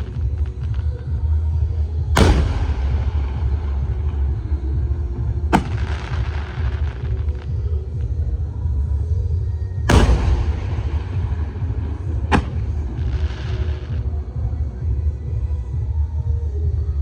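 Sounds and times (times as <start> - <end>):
steady low rumble: 0.0 - 17.0
firework bangs: 2.2 - 8.2, 9.9 - 14.6.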